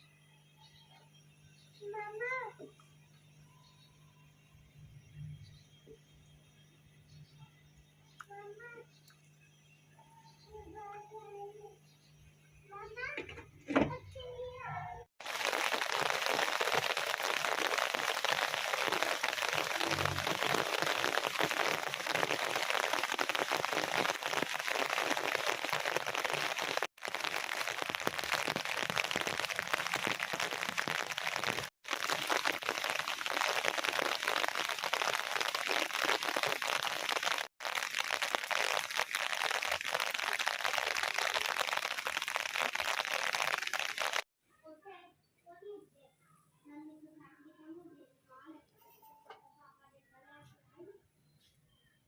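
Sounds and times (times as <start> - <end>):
heavy rain falling: 15.2 - 44.2.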